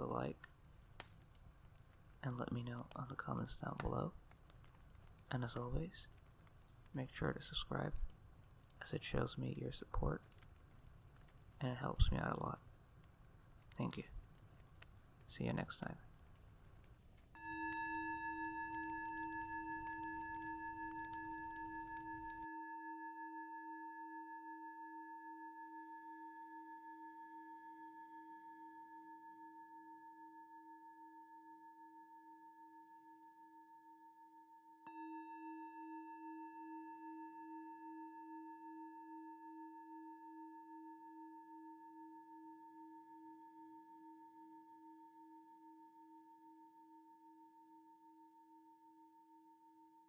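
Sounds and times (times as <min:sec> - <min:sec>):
singing bowl ringing: 0:17.4 - 0:50.0.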